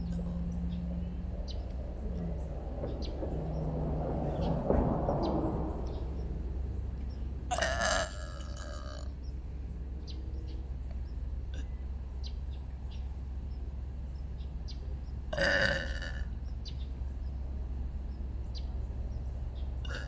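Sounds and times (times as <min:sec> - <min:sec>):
low background rumble: 0:00.0 - 0:20.0
loud human burp: 0:07.5 - 0:09.1, 0:15.3 - 0:16.3.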